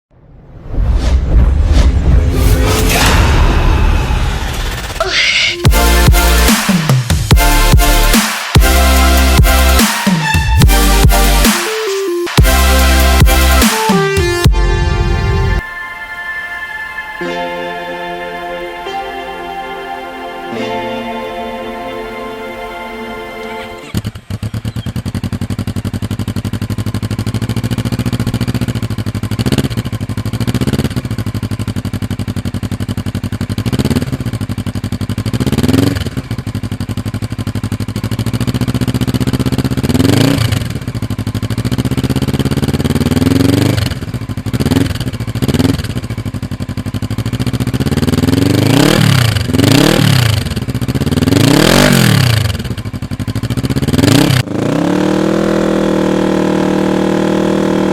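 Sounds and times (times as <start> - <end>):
motorcycle engine idling and revving: 5.6 - 11.6, 12.3 - 14.6, 23.8 - 57.9.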